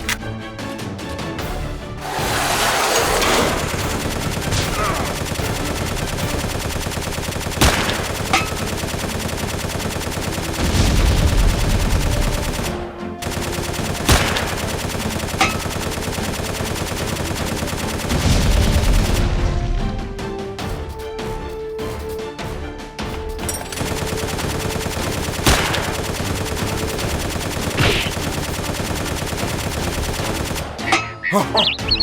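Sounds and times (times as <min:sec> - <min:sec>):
machine-gun fire: 0:03.1 - 0:19.4, 0:23.7 - 0:30.8
sharp single gunshots: 0:27.8 - 0:28.3.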